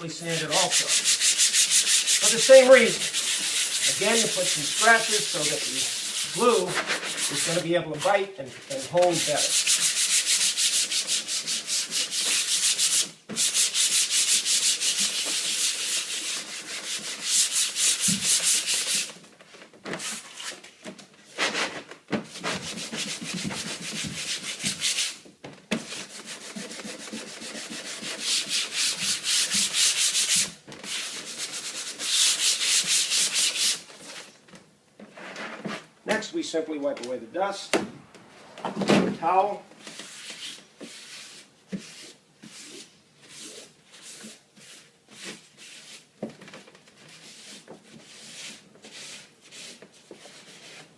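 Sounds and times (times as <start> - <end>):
sandpaper rubbing: 0.3 - 19.2, 22.3 - 25.2, 25.8 - 34.3, 39.8 - 46.1, 47.1 - 50.9.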